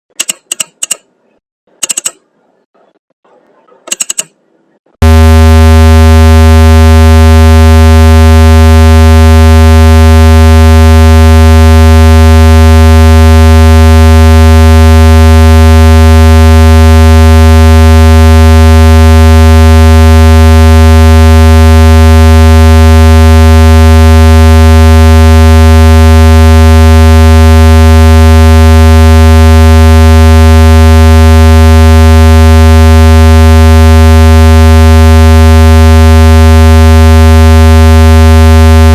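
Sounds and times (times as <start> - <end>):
low electronic tone: 5.0 - 38.9.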